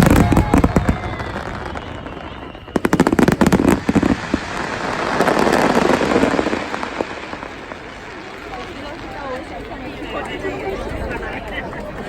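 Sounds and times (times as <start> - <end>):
fireworks crackling hiss: 0.0 - 9.8
fireworks popping: 0.0 - 10.4.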